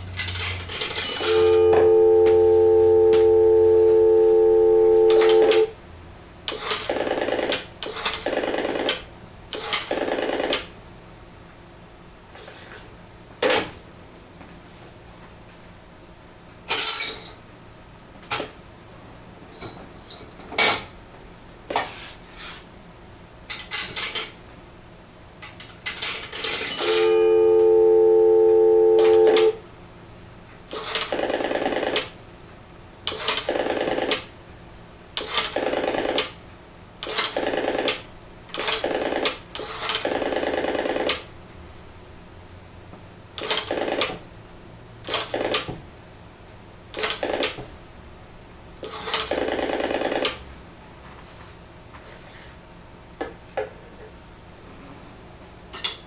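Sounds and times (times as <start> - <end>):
short buzzy tone bursts: 1.2 - 5.7, 26.8 - 29.6
dial tone: 1.2 - 5.8, 26.7 - 29.6
payphone handset clicks and clatter: 5.1 - 5.7.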